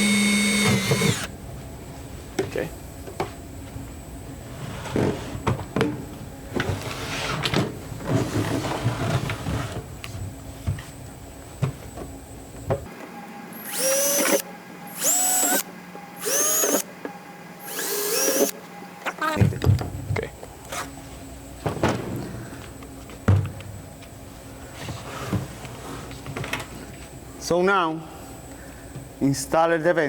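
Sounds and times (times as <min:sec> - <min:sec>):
power drill spinning: 0:00.0 - 0:01.3, 0:13.6 - 0:15.6, 0:16.2 - 0:16.9, 0:17.6 - 0:18.5.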